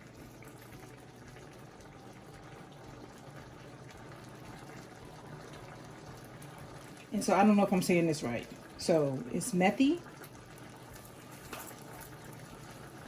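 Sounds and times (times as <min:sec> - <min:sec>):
sauce bubbling in a pot: 0:00.0 - 0:13.0.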